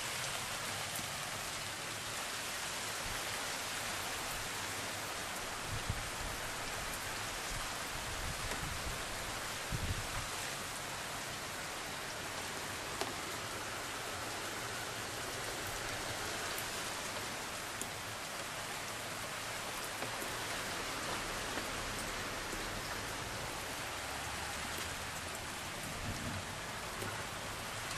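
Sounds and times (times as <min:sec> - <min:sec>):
heavy rain splashing: 0:00.0 - 0:27.9.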